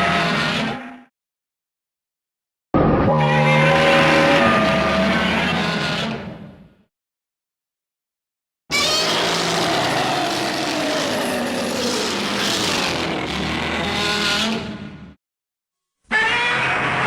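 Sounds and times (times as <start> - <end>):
monster roar: 2.8 - 6.2, 8.7 - 13.6.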